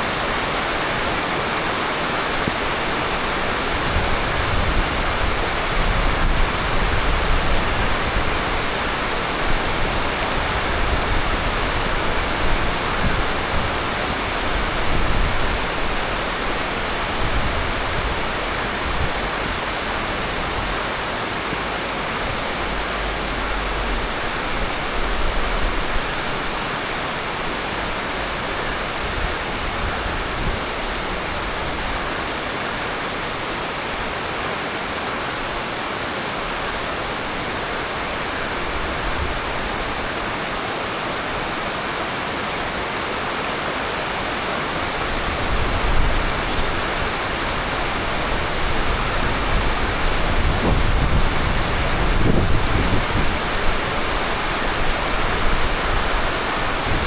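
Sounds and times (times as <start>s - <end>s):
low gusts rumbling: 0.0s - 32.5s, 44.6s - 57.0s
heavy rain falling: 0.0s - 57.0s.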